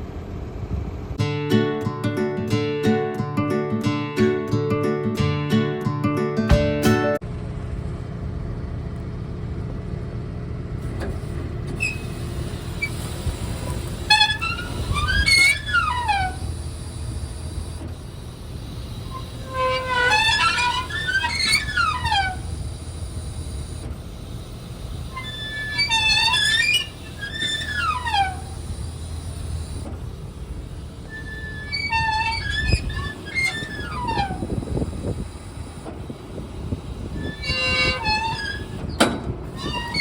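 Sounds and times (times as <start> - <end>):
tractor engine running: 6.5 - 40.0
baler squealing: 11.8 - 40.0.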